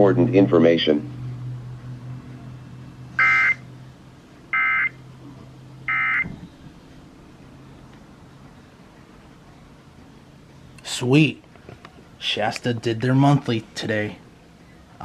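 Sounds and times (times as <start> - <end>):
digital data bursts: 3.2 - 3.6.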